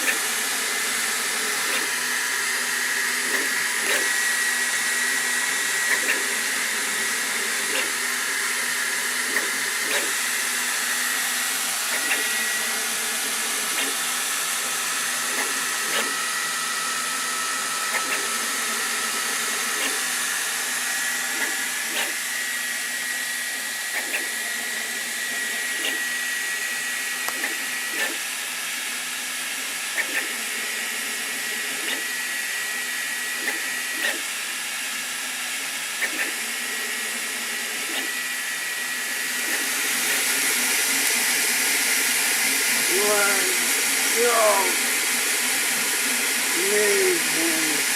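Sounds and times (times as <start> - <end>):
fan rushing: 36.0 - 45.0, 46.3 - 47.9
high whining tones: 42.4 - 45.0.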